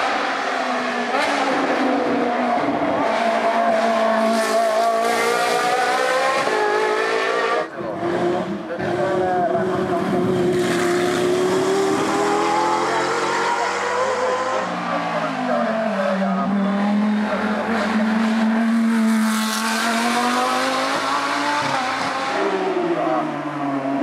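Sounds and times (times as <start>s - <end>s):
race car engine running hard: 7.6s - 24.0s.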